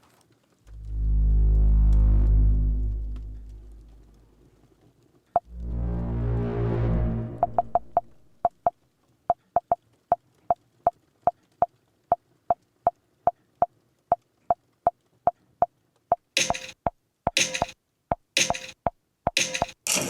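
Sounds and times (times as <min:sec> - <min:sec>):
short sharp clicks with tone: 0:16.2 - 0:20.0.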